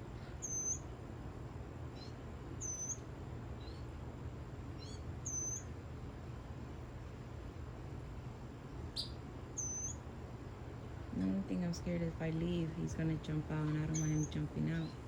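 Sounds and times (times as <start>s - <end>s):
low background hum: 0.0s - 15.0s
bird chirping: 0.2s - 0.9s, 1.9s - 3.9s, 4.8s - 5.7s, 8.9s - 10.0s, 13.6s - 15.0s.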